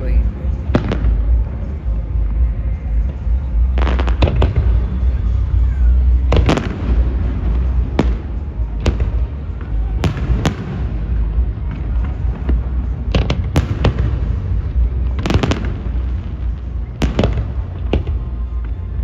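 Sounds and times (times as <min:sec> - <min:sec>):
low rumble of booming shells: 0:00.0 - 0:18.8
fireworks bangs: 0:03.8 - 0:19.0.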